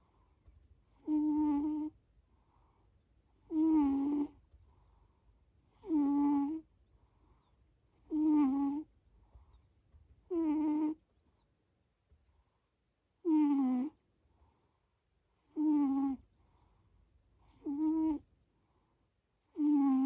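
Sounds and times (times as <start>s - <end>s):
pet snoring: 0.9s - 2.0s, 3.4s - 4.4s, 5.7s - 6.7s, 8.0s - 8.9s, 10.3s - 11.0s, 13.2s - 14.0s, 15.4s - 16.3s, 17.4s - 18.2s, 19.5s - 20.0s.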